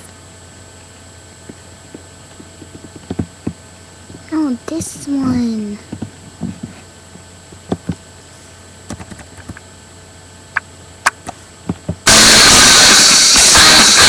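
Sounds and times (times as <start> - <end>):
loud music: 12.1 - 14.0.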